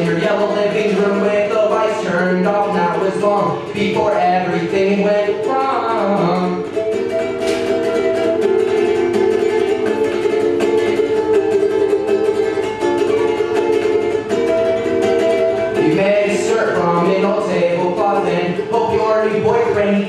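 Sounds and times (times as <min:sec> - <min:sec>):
man singing: 0:00.0 - 0:07.1, 0:15.7 - 0:20.0
ukulele strumming chords: 0:00.0 - 0:20.0.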